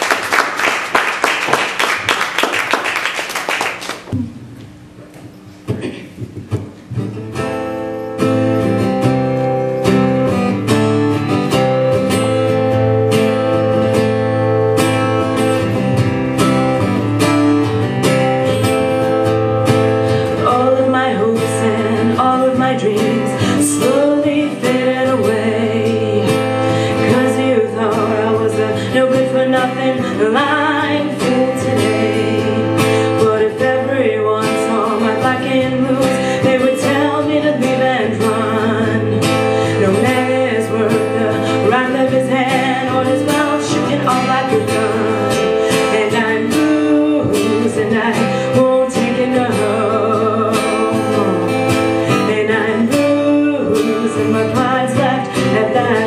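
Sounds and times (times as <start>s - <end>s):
guitar plucked and strummed: 5.7s - 56.0s
person singing: 20.2s - 56.0s.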